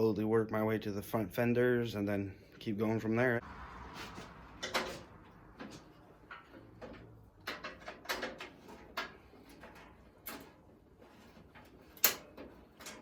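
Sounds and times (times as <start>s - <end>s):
light knocks and clunks of vehicle parts: 4.6s - 13.0s.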